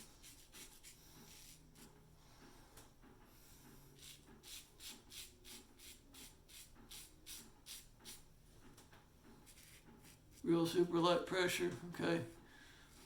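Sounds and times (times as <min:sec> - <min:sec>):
razor scraping stubble: 0:00.0 - 0:01.9, 0:03.9 - 0:08.3, 0:09.4 - 0:10.6.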